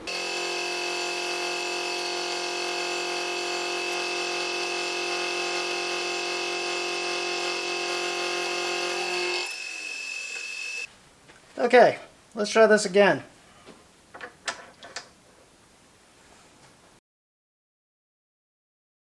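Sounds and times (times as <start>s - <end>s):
milling machine whining: 0.0s - 10.9s.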